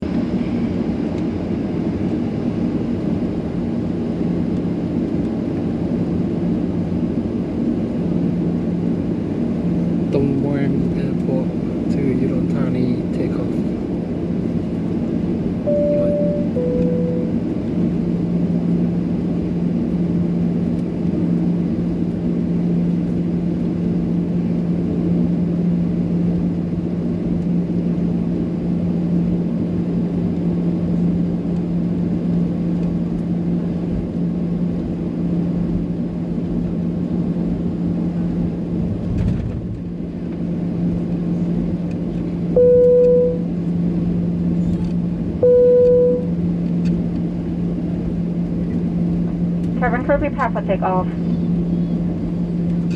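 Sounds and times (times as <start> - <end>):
airliner engines droning: 0.0 - 52.9
cabin chime tone: 15.7 - 17.3.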